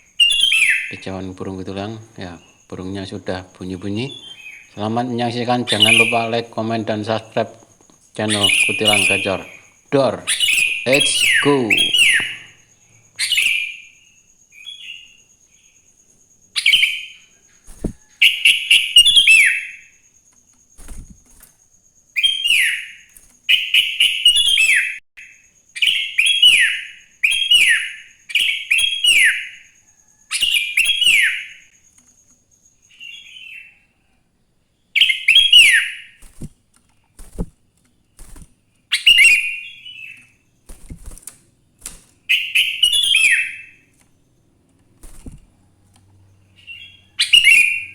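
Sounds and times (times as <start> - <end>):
bulbul singing whistled notes: 0.0 - 1.0, 3.8 - 6.7, 8.2 - 15.7, 16.6 - 20.0, 20.7 - 21.4, 22.1 - 31.7, 35.0 - 36.5, 38.3 - 41.0, 42.3 - 43.9, 46.4 - 47.9.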